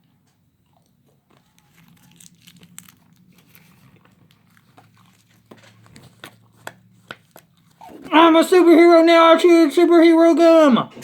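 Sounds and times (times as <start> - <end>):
gum being chewed: 0.6 - 8.1
gum wrapper crinkling: 0.8 - 8.1.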